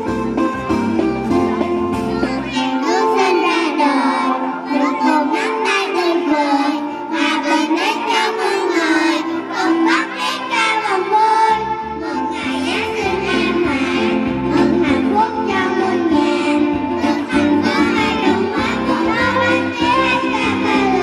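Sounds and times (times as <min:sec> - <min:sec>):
instrumental backing track: 0:00.0 - 0:21.0
young children singing: 0:02.0 - 0:21.0.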